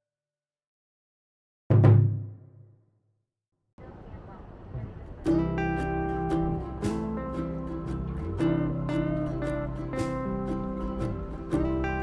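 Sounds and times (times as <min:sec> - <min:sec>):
acoustic guitar playing chords: 0:05.2 - 0:12.0.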